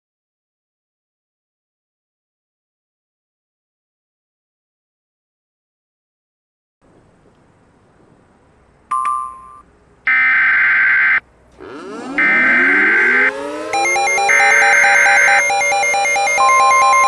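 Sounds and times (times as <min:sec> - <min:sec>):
rising electronic sweeps: 0:11.1 - 0:17.0
screeching digital data tones: 0:12.0 - 0:17.0.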